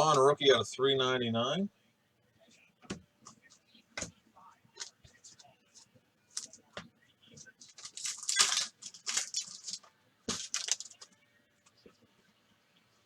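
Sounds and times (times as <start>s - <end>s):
foil wrapper crinkling: 7.6s - 11.1s.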